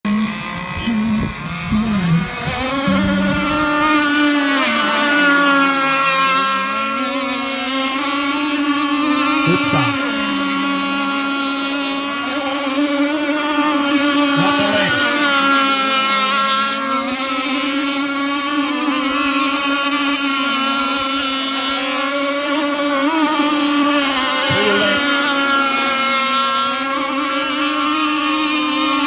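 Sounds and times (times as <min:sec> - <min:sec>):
model boat motor whine: 0:00.0 - 0:29.0
wind buffeting microphone: 0:00.5 - 0:04.5.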